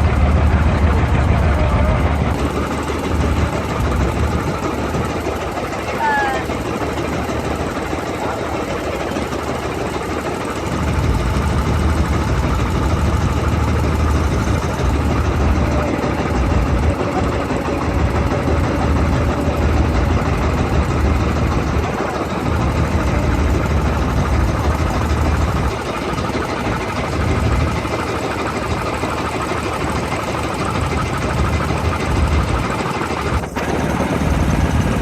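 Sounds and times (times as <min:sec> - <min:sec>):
engine running: 0:00.0 - 0:35.0
heavy low rumble: 0:00.0 - 0:35.0.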